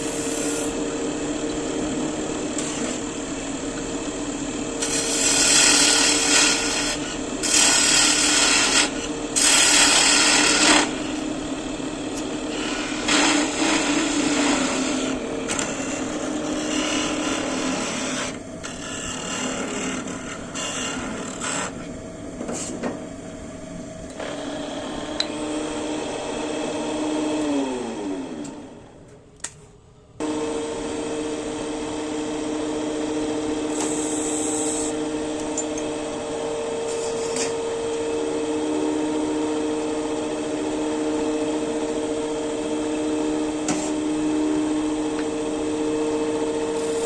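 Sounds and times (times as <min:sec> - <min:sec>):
power tool cutting wood: 0:04.8 - 0:11.3, 0:12.2 - 0:21.7
power tool motor hum: 0:04.8 - 0:11.4, 0:32.0 - 0:35.9.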